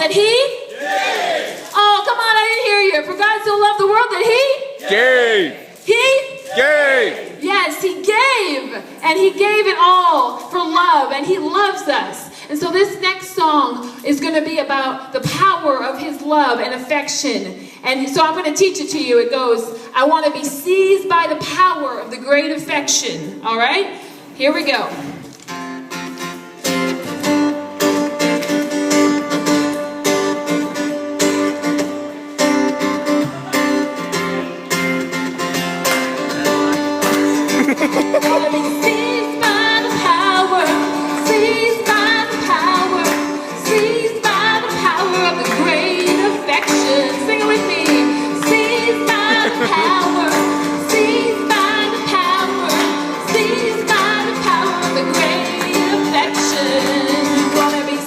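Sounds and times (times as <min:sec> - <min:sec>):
acoustic guitar strumming: 0:25.5 - 0:58.0
people singing along: 0:49.2 - 0:50.1.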